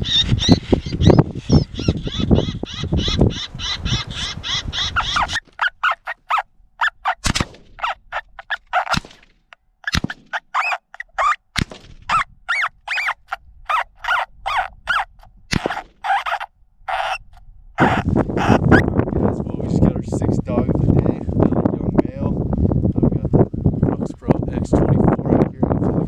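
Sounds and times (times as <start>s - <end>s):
electronic bird distress calls: 0.0s - 9.0s, 12.1s - 18.8s
sharp knocks: 7.1s - 12.2s.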